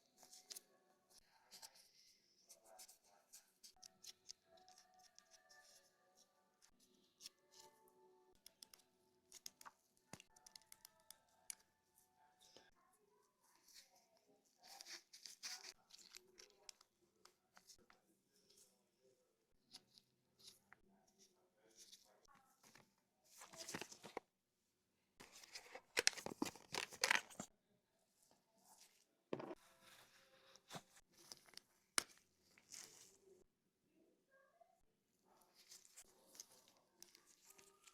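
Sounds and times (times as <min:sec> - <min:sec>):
faint background music: 0:00.0 - 0:24.3
rustling and crinkling handling noise: 0:21.7 - 0:24.2, 0:25.2 - 0:27.5.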